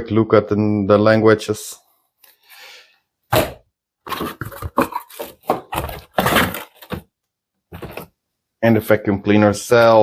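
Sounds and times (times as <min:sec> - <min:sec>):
paper pages flipping: 0:04.1 - 0:07.0, 0:07.7 - 0:08.1.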